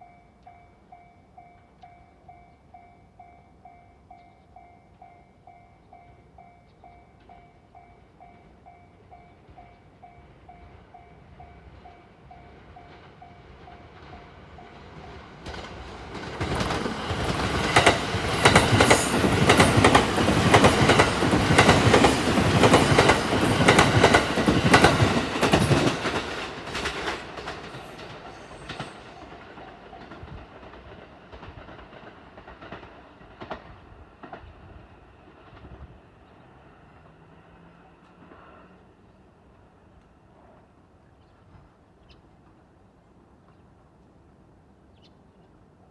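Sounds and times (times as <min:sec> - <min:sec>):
train running noise: 0:06.8 - 0:40.4
wheels clacking over rail joints: 0:12.8 - 0:34.6.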